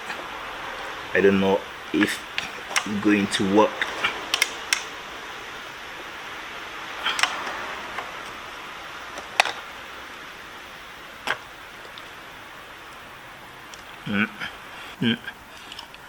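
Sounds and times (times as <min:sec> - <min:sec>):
faint hiss: 0:00.0 - 0:16.0
small plastic and metal clicks: 0:03.8 - 0:04.9, 0:07.1 - 0:07.5.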